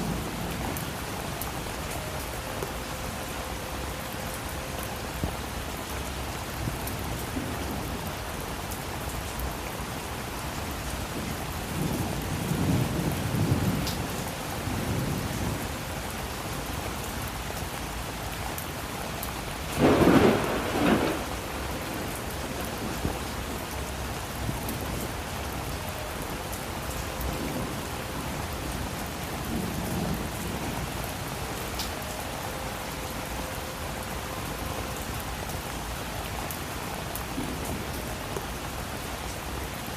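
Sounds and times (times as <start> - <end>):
steady rain: 0.0 - 39.9
sharp thunderclap: 19.7 - 21.3
thunder rolling: 19.7 - 23.3.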